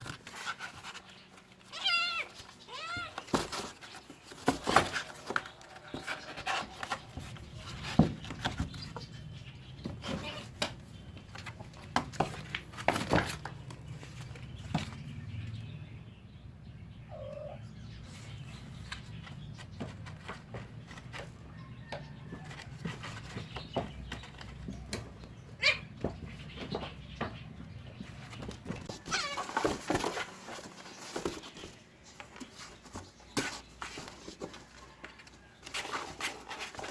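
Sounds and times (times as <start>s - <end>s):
cats meowing: 1.6s - 3.3s, 10.0s - 10.7s, 17.0s - 17.8s, 25.5s - 26.1s, 29.0s - 29.6s
sharp knocks and scuffles: 2.3s - 15.2s, 18.3s - 36.9s.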